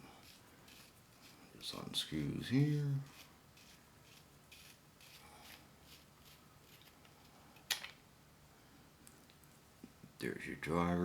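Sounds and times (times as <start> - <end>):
flashlight threads rubbing: 0.2 - 7.3.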